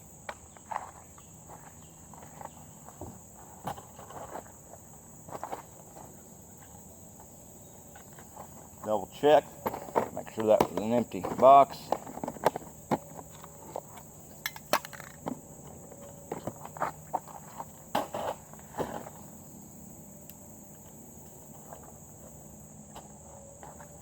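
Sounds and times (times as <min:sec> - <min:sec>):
insects droning: 0:00.0 - 0:24.0.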